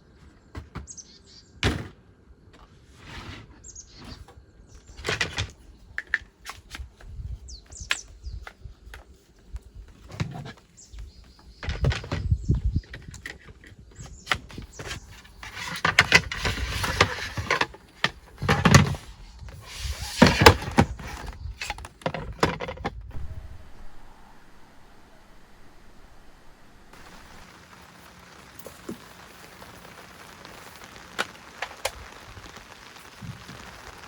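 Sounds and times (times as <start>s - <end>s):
rustling: 14.6s - 34.0s.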